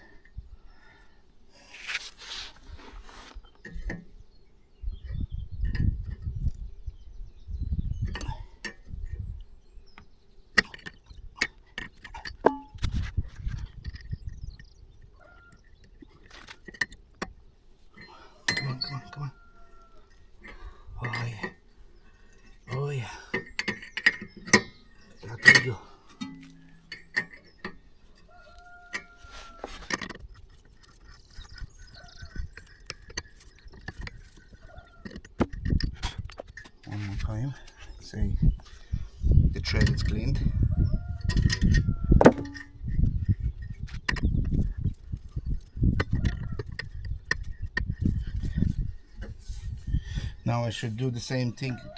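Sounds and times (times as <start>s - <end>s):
scraping and handling noise: 1.6s - 4.1s, 15.5s - 38.0s, 41.3s - 51.9s
metal tools knocking on steel bolt: 10.6s - 12.8s, 18.0s - 21.6s, 23.3s - 30.2s, 41.2s - 42.8s.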